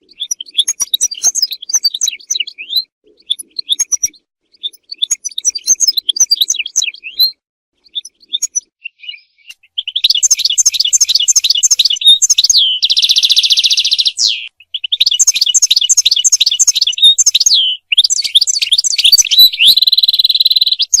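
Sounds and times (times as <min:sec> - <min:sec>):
goldfinch singing: 0:00.0 - 0:21.0.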